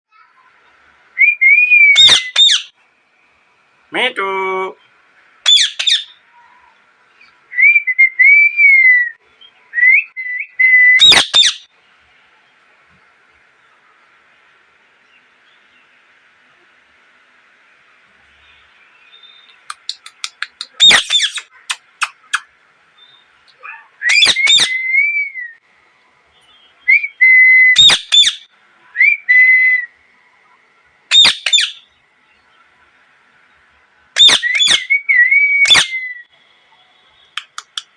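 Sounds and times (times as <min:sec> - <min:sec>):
parrot whistling: 0:01.2 - 0:02.7, 0:05.4 - 0:06.2, 0:09.8 - 0:11.7, 0:19.1 - 0:25.6, 0:26.9 - 0:29.9, 0:31.1 - 0:31.9, 0:34.2 - 0:36.3
parrot shrill screech: 0:01.8 - 0:02.7, 0:05.5 - 0:06.2, 0:10.9 - 0:11.6, 0:20.8 - 0:21.5, 0:24.0 - 0:25.5, 0:27.8 - 0:28.5, 0:31.1 - 0:31.9, 0:34.2 - 0:36.3.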